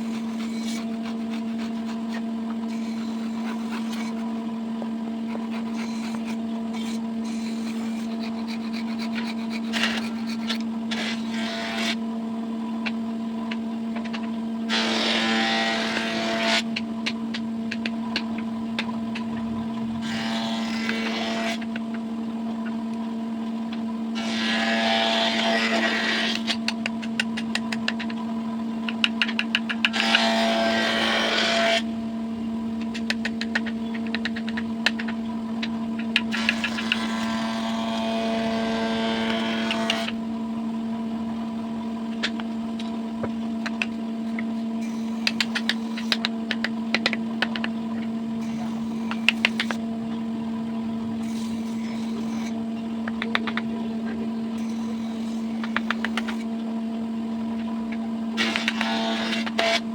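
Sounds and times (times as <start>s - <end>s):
power tool motor cutting wood: 0.0s - 4.2s, 5.4s - 12.0s, 14.7s - 16.6s, 20.0s - 21.7s, 24.2s - 26.6s, 29.8s - 31.8s, 36.3s - 40.2s, 44.8s - 46.3s, 48.4s - 49.8s, 51.2s - 52.6s, 54.5s - 56.5s, 58.4s - 59.9s.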